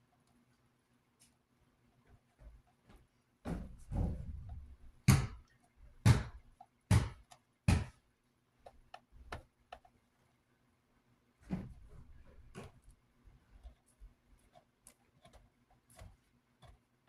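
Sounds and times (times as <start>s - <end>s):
knocks and taps on work surface: 6.1s - 8.0s.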